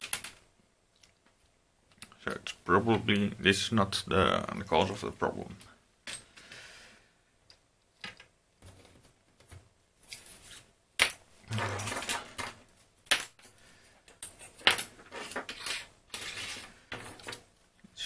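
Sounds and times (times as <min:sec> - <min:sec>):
clattering and rustling: 0:08.0 - 0:17.5.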